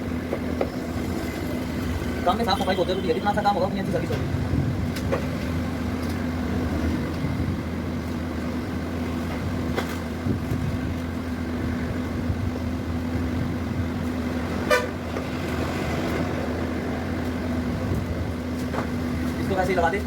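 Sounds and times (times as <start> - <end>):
vehicles humming: 0.0 - 20.0
vehicle horn toot: 2.4 - 3.5, 14.6 - 15.0.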